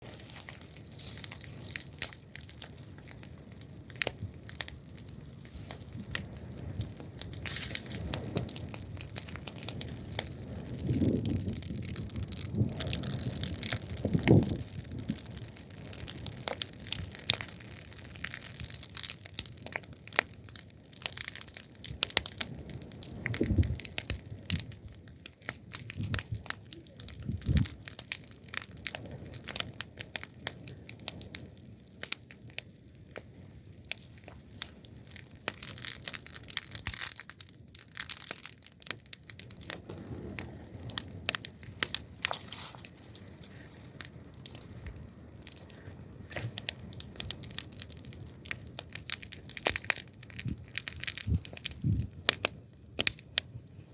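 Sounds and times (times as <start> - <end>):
fire crackling and popping: 0.0 - 53.9.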